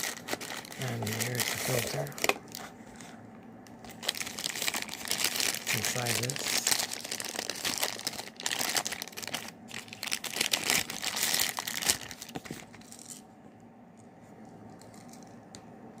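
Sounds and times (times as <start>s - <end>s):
packaging crinkling and rustling: 0.0s - 3.2s, 3.8s - 13.2s.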